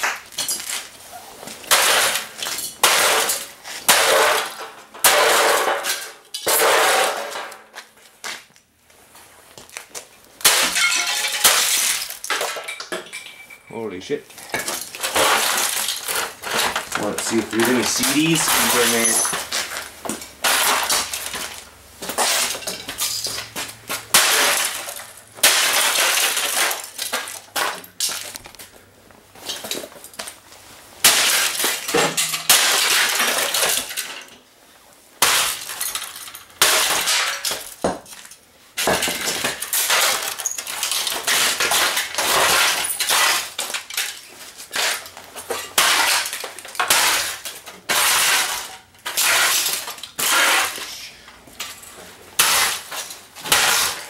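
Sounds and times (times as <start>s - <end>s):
stereo being smashed apart: 1.6s - 7.6s, 10.4s - 12.8s, 14.5s - 28.7s, 31.0s - 34.3s, 35.2s - 51.0s, 52.4s - 54.0s
plastic parts cracking and clattering: 14.3s - 28.8s, 35.2s - 50.8s.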